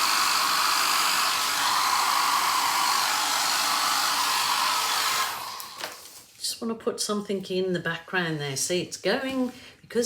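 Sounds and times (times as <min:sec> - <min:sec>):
hair dryer running: 0:00.0 - 0:06.1.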